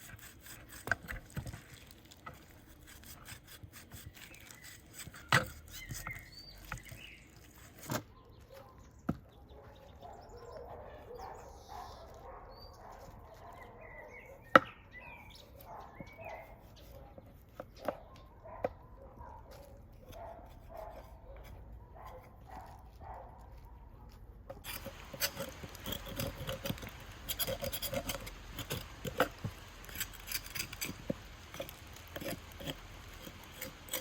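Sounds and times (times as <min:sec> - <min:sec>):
knife scraping meat off bones: 0:00.0 - 0:08.1, 0:24.6 - 0:34.0.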